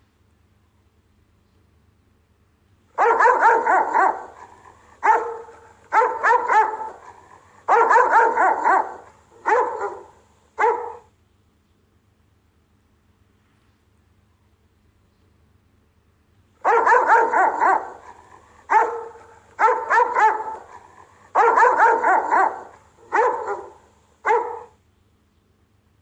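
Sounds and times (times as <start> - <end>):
dog barking: 3.0 - 11.1, 16.6 - 24.8.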